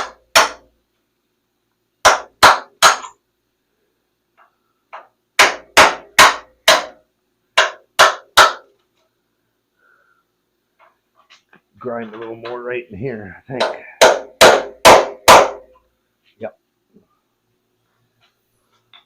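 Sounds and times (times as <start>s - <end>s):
hammer striking steel frame: 0.0s - 0.7s, 2.0s - 3.2s, 5.0s - 7.0s, 7.6s - 8.7s, 13.5s - 15.8s.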